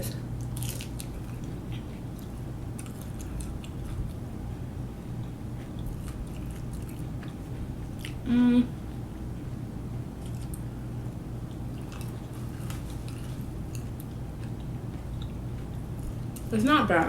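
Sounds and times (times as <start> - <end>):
person chewing crunchy food: 0.4 - 4.3, 5.2 - 8.2, 10.2 - 10.6, 11.4 - 16.5
person humming mm: 8.2 - 8.8.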